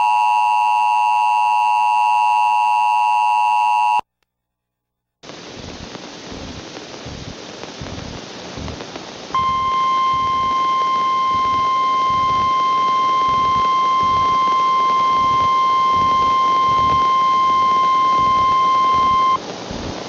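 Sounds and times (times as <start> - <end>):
broadcast static hiss: 5.2 - 20.0
steady warning alarm tone: 9.4 - 19.4.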